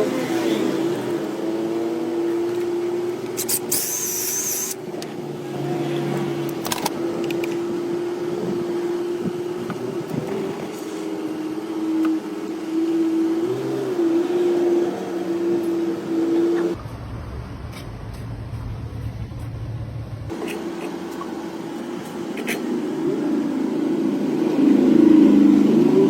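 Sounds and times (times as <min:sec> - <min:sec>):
steady motor hum: 0:01.0 - 0:13.6.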